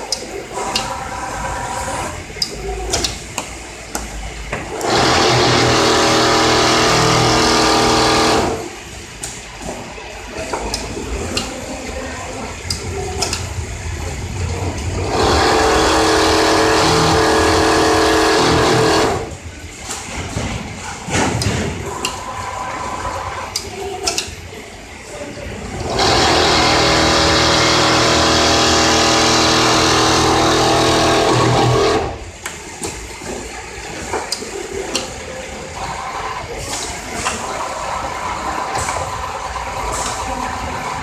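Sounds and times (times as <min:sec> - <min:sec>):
sewing machine running: 0:04.7 - 0:08.8, 0:14.7 - 0:19.4, 0:25.6 - 0:32.3.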